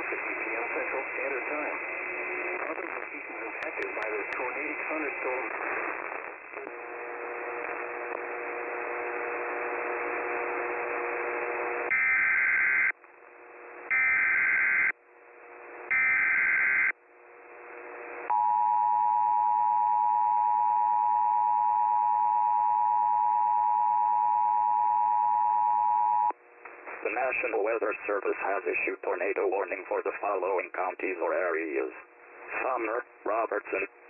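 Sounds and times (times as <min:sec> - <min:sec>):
static hiss: 0:00.0 - 0:12.9.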